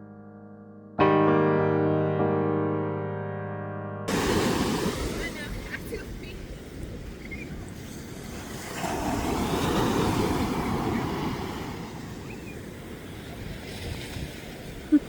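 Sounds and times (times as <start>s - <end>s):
ocean wave breaking: 4.1s - 15.0s.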